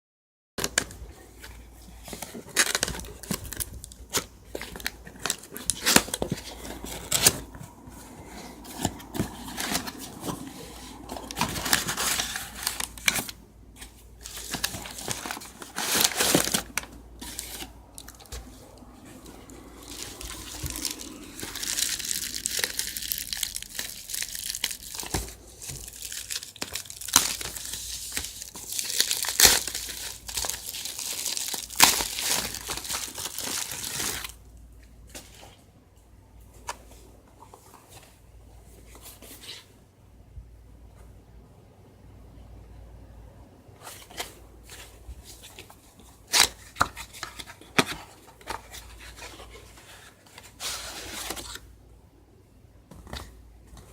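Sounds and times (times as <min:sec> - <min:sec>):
plastic and paper crinkling: 0:00.6 - 0:34.4.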